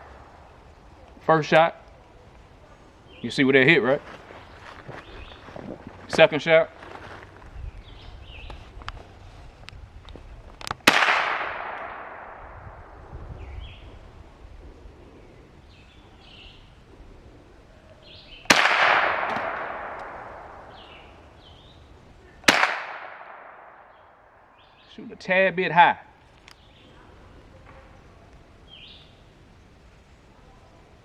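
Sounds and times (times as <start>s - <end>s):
gunshots with long echo: 10.8s - 13.1s, 18.5s - 21.4s, 22.4s - 24.5s.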